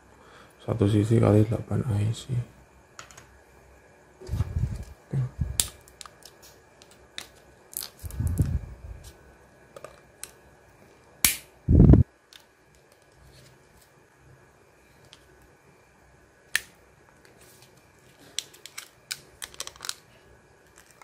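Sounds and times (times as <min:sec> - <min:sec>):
packaging handling noise: 0:17.2 - 0:21.0.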